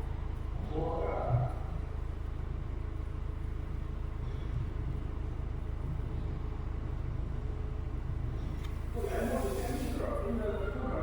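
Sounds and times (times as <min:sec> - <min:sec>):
vehicle engine low rumble: 0:00.0 - 0:11.0.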